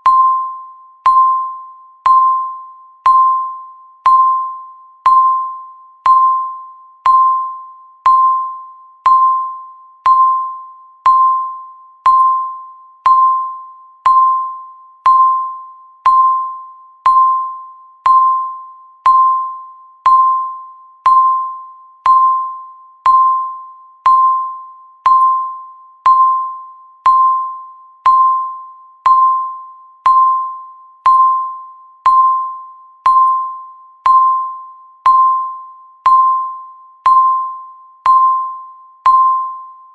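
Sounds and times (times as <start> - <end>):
bell-like timer ticks: 0.0 - 39.9.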